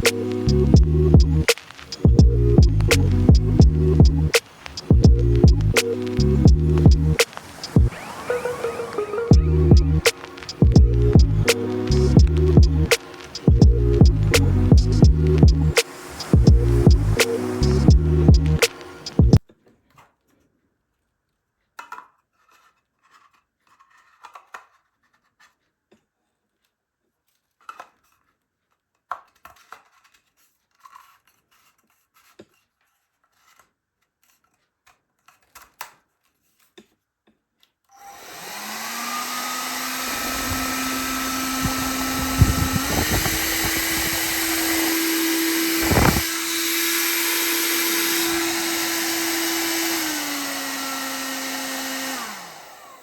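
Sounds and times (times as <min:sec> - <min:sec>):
hair dryer blowing: 0:07.2 - 0:10.8, 0:15.8 - 0:17.7, 0:38.0 - 0:53.0.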